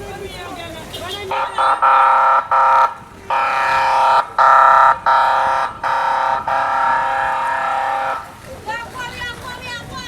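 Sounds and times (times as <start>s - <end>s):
loud buzzing horn blasts: 1.3s - 8.3s.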